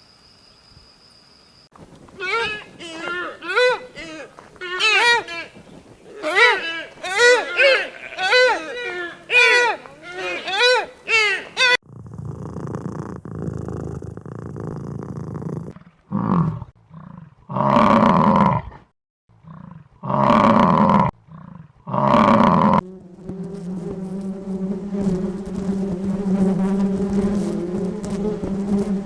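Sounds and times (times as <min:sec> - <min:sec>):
animal grunts: 0:11.8 - 0:22.8
insect buzz: 0:22.2 - 0:29.0.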